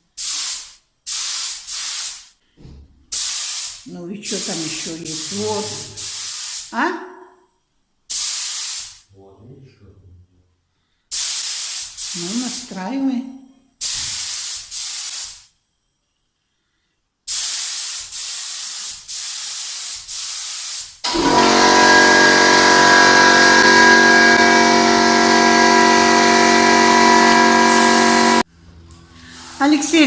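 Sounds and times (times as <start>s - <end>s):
paint sprayer hissing: 0.2s - 2.3s, 3.1s - 6.7s, 8.1s - 9.0s, 11.1s - 12.7s, 13.8s - 15.5s, 17.3s - 28.4s
compressor humming: 21.0s - 28.9s.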